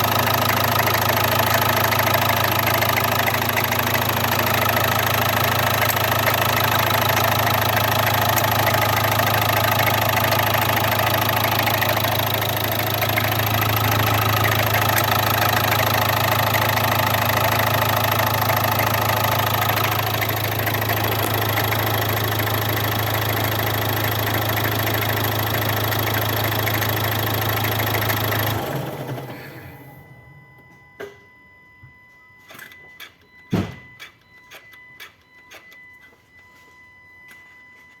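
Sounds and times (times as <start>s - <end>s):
engine knocking and grinding: 0.0s - 29.8s
diesel engine idling: 0.0s - 30.5s.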